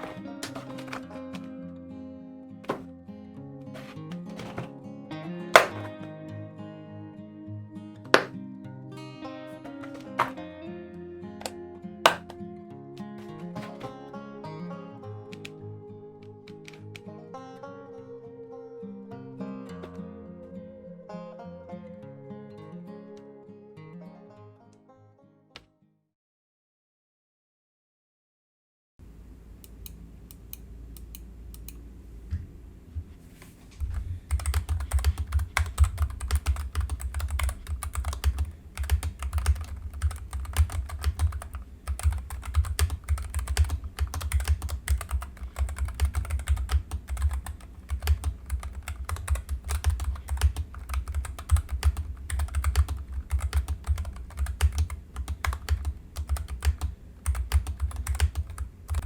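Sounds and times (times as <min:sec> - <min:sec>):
typing on mechanical keyboard: 0:00.0 - 0:01.5, 0:05.6 - 0:05.9, 0:08.1 - 0:08.3, 0:09.8 - 0:10.4, 0:11.4 - 0:12.3, 0:33.8 - 0:59.0.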